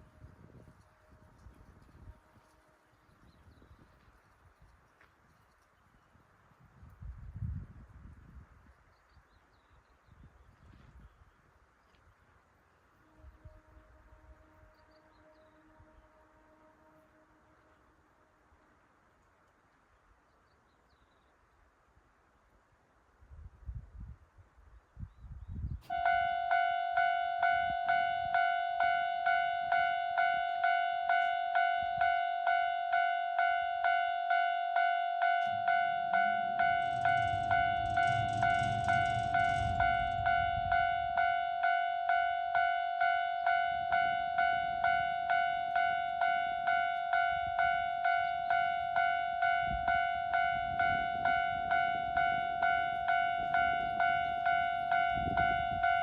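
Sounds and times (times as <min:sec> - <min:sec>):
level crossing warning bell ringing: 0:25.9 - 0:56.0
train rumbling past: 0:25.9 - 0:56.0.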